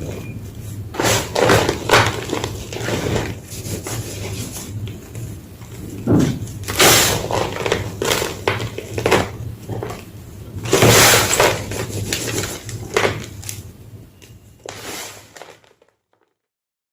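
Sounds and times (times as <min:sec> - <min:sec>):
low steady hum: 0:00.0 - 0:15.5
chalk crunching and breaking: 0:06.7 - 0:09.1.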